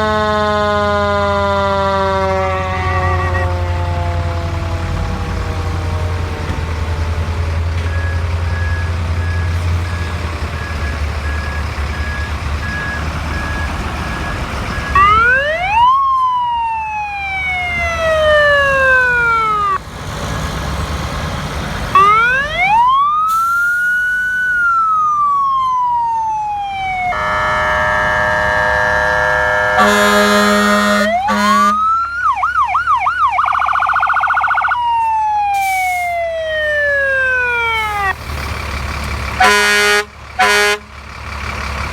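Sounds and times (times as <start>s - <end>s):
many-toned horn blast: 0.0s - 4.3s, 27.0s - 31.9s, 39.4s - 40.9s
ambulance siren wailing: 0.0s - 19.8s, 21.9s - 38.3s
low engine rumble: 0.0s - 41.9s.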